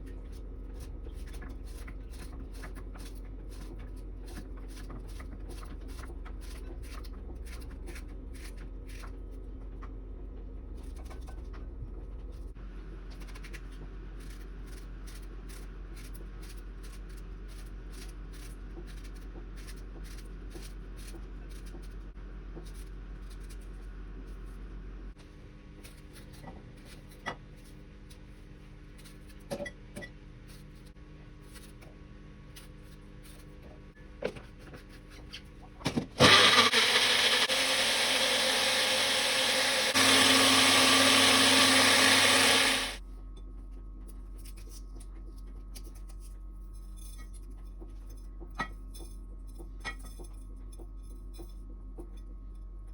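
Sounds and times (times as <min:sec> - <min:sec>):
mixer grinder running: 0:36.2 - 0:43.0.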